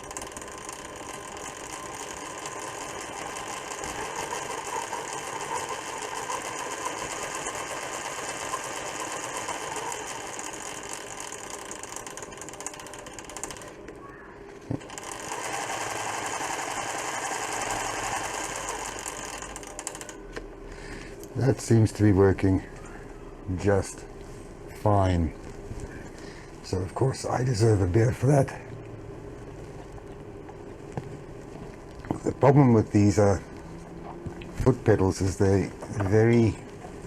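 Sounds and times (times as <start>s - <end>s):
sewing machine running: 0.0s - 13.8s, 14.7s - 20.2s.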